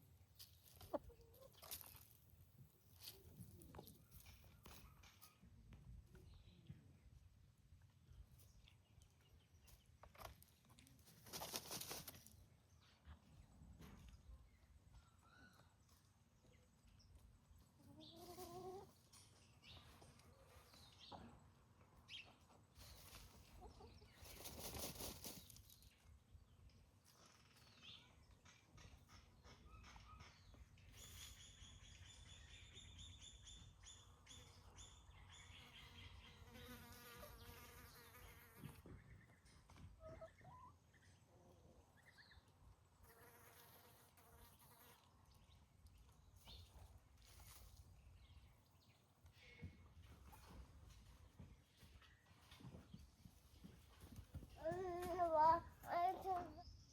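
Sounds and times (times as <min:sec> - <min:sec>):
high-pitched chicken chirps: 0:17.8 - 0:18.9, 0:40.0 - 0:40.9.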